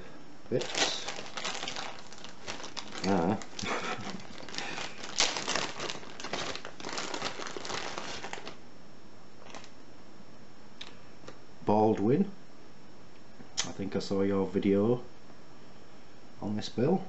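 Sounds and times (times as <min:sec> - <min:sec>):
packaging crinkling and rustling: 0:00.5 - 0:08.6, 0:09.4 - 0:09.8.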